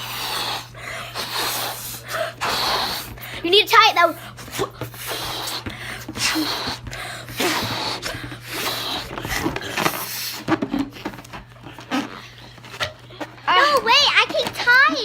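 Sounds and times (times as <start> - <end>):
child gasping breaths: 0.0 - 10.2
puffs into balloon: 0.0 - 13.4.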